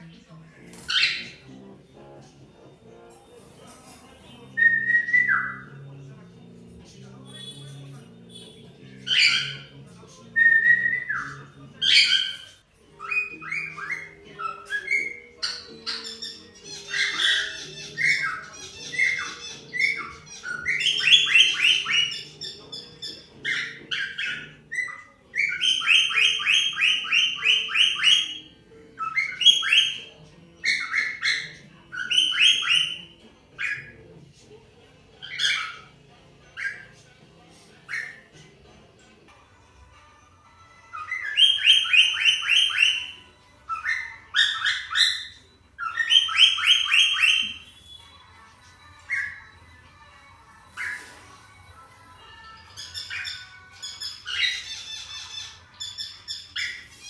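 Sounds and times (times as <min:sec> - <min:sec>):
cockatiels chirping and calling: 0:00.0 - 0:05.9, 0:07.2 - 0:34.2, 0:35.1 - 0:38.7, 0:40.7 - 0:57.0.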